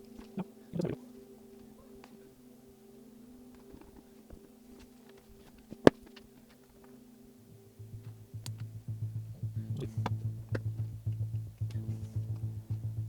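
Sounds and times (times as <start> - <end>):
background music with bass beat: 7.5 - 13.0.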